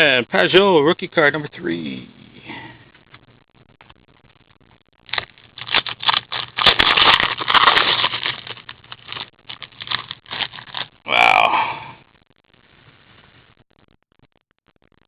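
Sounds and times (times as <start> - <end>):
foil wrapper crinkling and tearing: 5.0 - 11.0.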